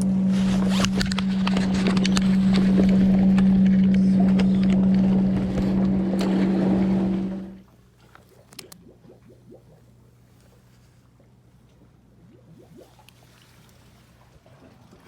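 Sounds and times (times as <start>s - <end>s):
boat engine humming: 0.0s - 15.0s
water: 0.0s - 15.0s
scattered clicks: 0.7s - 6.3s.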